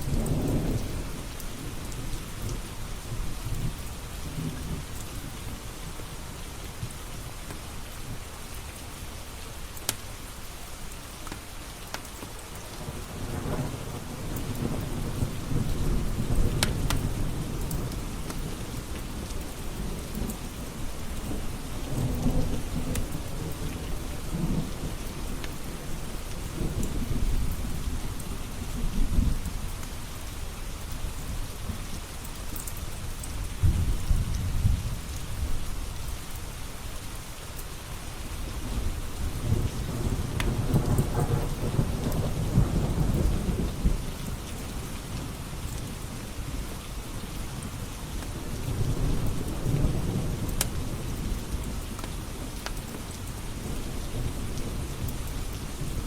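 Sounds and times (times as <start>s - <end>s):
steady rain: 0.0s - 56.0s
thunder rumbling: 33.5s - 35.6s, 38.6s - 45.3s.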